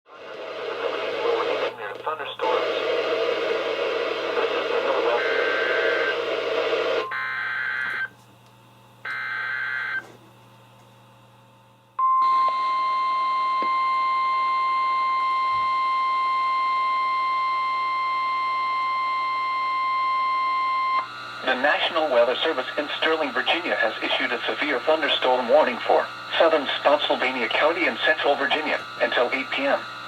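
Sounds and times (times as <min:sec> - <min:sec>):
steady alarm tone: 0:04.9 - 0:08.1, 0:09.0 - 0:10.0, 0:12.0 - 0:30.0.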